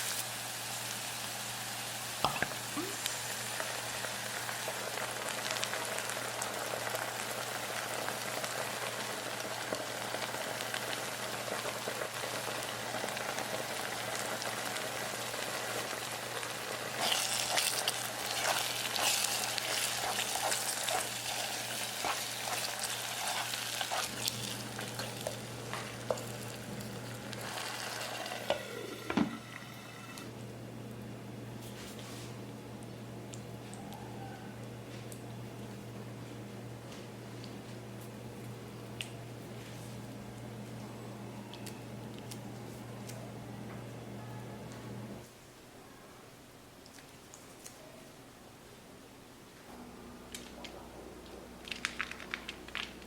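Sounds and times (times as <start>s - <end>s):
food sizzling in hot oil: 0.0s - 30.3s.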